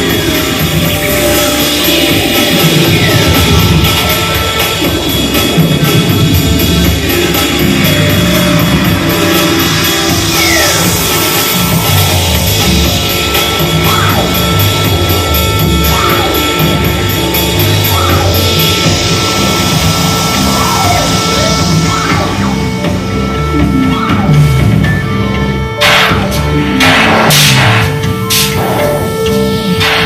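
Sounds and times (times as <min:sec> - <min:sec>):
fast high ticking: 0:00.0 - 0:29.2
falling synthesizer pitch sweeps: 0:00.0 - 0:30.0
held high synth tone: 0:00.0 - 0:30.0
stepping bass line: 0:00.0 - 0:30.0.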